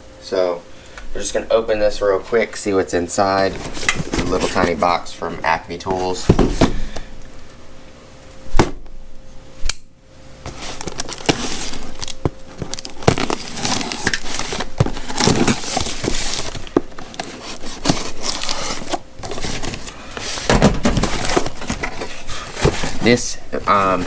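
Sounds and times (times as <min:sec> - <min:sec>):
cardboard and paper rustling: 0:03.2 - 0:07.1, 0:10.4 - 0:24.0.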